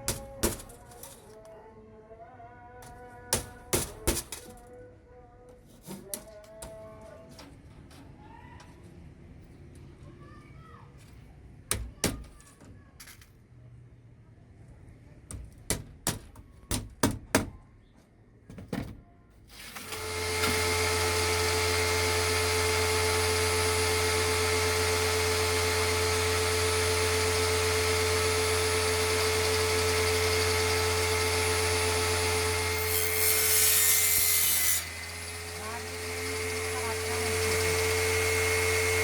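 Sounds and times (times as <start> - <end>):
electric power tool working wood: 19.8 - 39.0.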